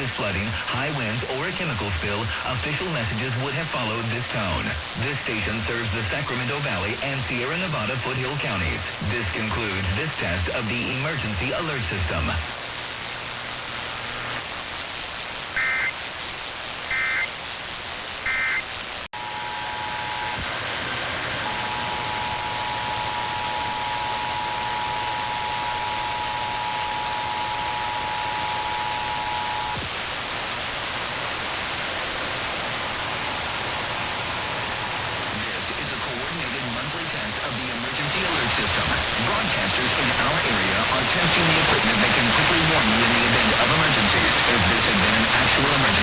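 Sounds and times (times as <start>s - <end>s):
radio static: 0.0s - 46.0s
short data bursts: 15.5s - 16.0s, 16.8s - 17.4s, 18.2s - 20.4s.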